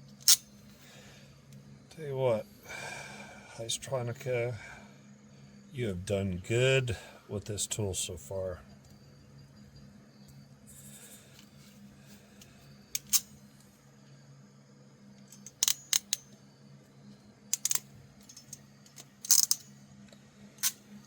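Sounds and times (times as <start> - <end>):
crimping tool ratchet clicking: 0.2 - 0.4, 13.0 - 13.3, 15.3 - 16.3, 17.5 - 19.7.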